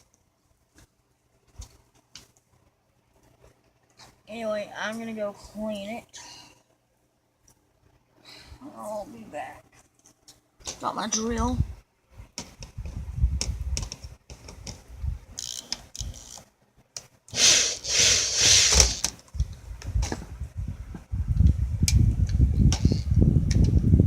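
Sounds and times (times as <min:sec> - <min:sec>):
power drill whirring: 0:17.3 - 0:19.1.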